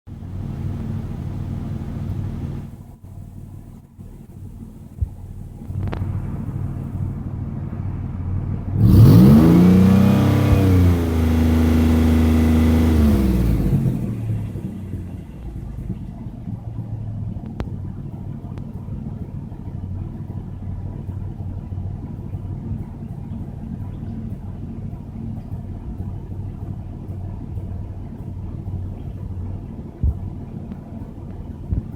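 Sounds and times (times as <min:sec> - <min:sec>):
car engine idling with misfire: 0:00.1 - 0:31.9
car engine revving: 0:08.8 - 0:17.9.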